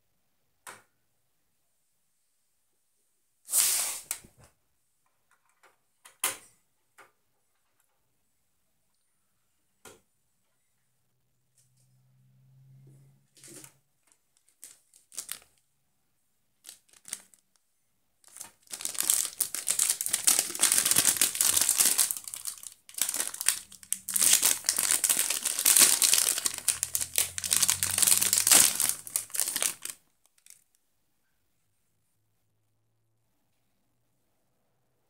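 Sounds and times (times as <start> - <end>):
paper or plastic crinkling: 14.4 - 15.6, 16.6 - 17.6, 18.2 - 30.6.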